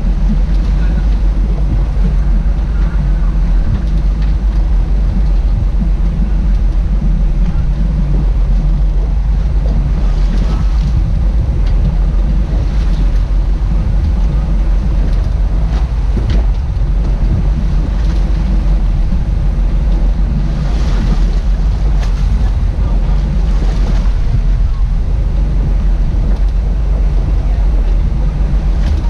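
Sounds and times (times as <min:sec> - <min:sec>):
boat engine humming: 0:00.0 - 0:29.0
water rushing past hull: 0:00.0 - 0:29.0
wind buffeting microphone: 0:00.0 - 0:29.0.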